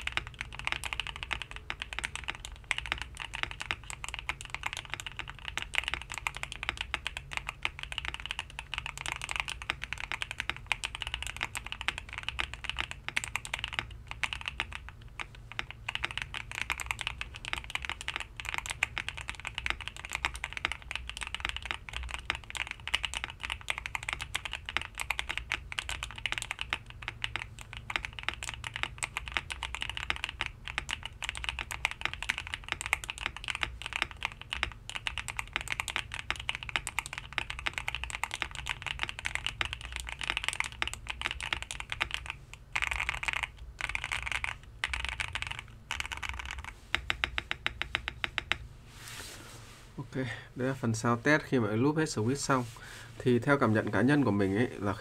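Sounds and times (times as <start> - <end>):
fast typing on mechanical keyboard: 0.0 - 48.6.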